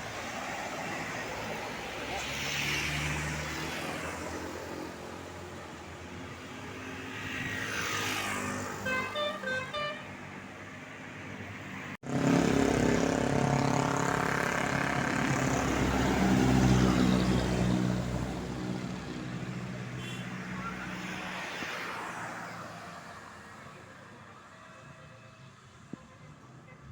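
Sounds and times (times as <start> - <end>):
musical bus horn notes: 8.8 - 10.2
bus engine running: 12.0 - 19.9.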